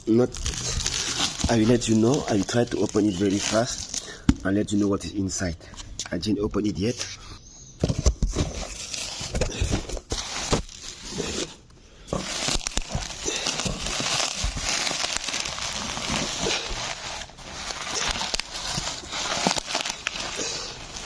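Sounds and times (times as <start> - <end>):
packaging being torn open: 0.0 - 4.1, 12.1 - 21.0.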